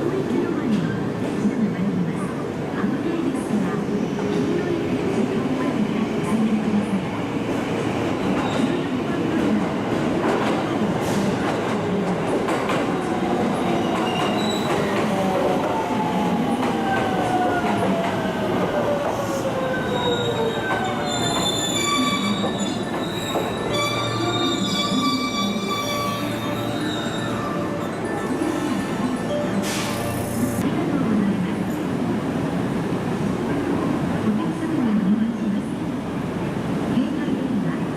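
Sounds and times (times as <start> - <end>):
train rumble with rail clicks: 5.2 - 19.4, 20.7 - 24.4.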